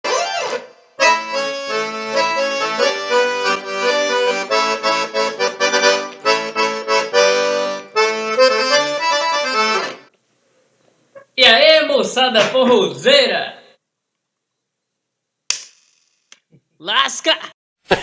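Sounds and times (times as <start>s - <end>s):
accordion melody: 0.0s - 10.2s.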